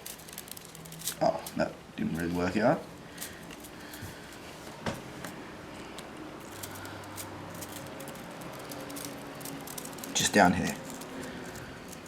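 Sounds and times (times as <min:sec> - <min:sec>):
sparklers clicking and rustling: 0:00.0 - 0:02.4, 0:06.4 - 0:12.0.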